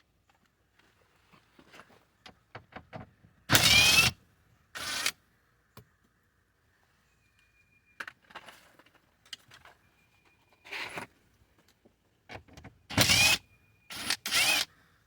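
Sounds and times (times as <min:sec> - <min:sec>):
cordless power tool whining: 0:03.5 - 0:04.2, 0:12.9 - 0:14.7.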